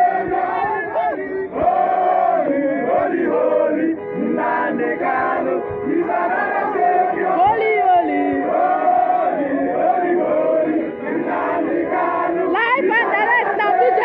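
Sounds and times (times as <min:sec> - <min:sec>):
crowd of men chanting: 0:00.0 - 0:14.0.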